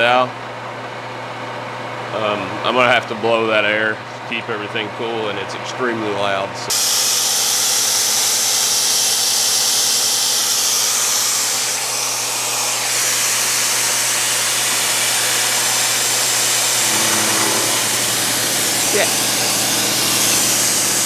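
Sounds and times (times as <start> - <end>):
compressed air hissing: 6.7 - 21.0
milling machine humming: 10.1 - 21.0.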